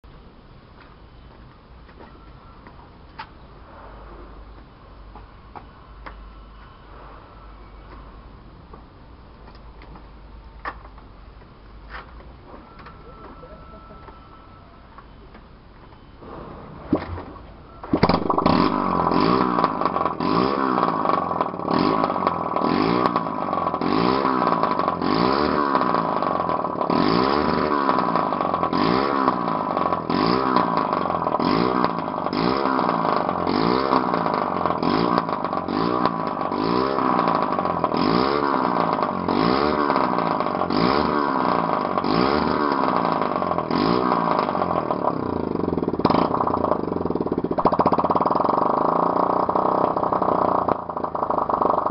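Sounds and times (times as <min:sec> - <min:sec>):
motorcycle engine revving: 0:17.6 - 0:51.9.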